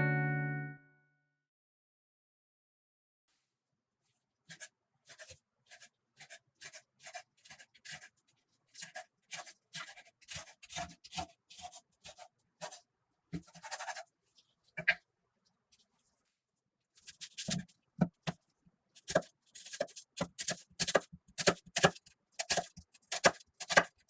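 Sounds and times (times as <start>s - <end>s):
utensil scraping bread: 4.5s - 15.0s.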